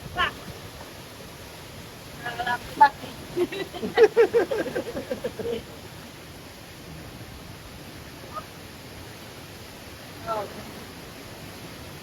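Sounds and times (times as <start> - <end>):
waterfall rushing: 0.0 - 6.9.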